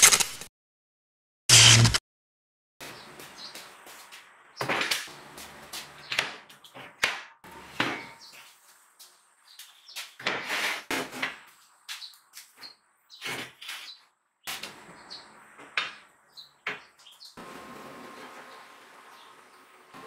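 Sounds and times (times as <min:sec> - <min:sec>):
workshop parts knocking and clattering: 0:04.6 - 0:08.5.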